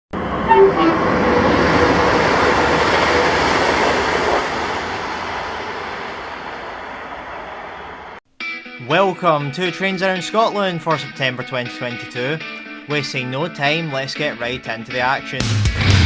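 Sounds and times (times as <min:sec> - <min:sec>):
train passing: 0:00.2 - 0:08.2.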